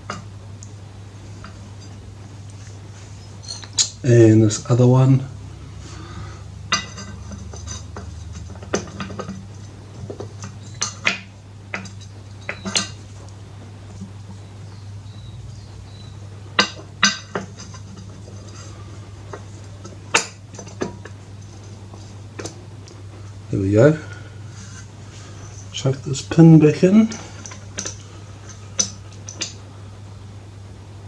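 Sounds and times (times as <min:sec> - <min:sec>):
metallic clicks and clinks: 0:03.4 - 0:04.0.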